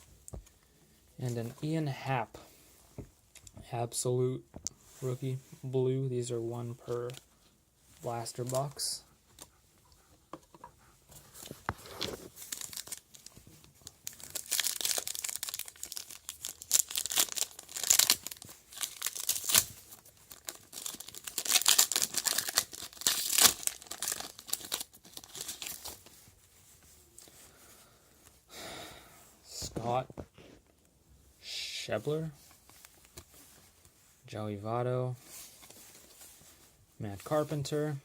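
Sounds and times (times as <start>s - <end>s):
wrapper tearing and crinkling: 11.8s - 26.2s
sharp wrapper cracks: 14.1s - 19.7s, 20.3s - 25.9s.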